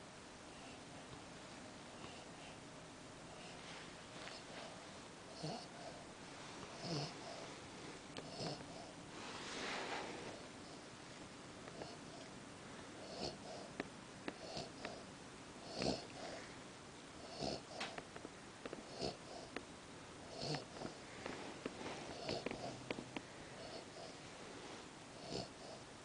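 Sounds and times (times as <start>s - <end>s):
dog snoring: 4.2s - 6.0s, 6.7s - 7.5s, 8.2s - 10.9s, 11.7s - 12.3s, 13.0s - 16.5s, 17.2s - 18.0s, 18.7s - 19.6s, 20.2s - 24.4s, 25.1s - 25.9s.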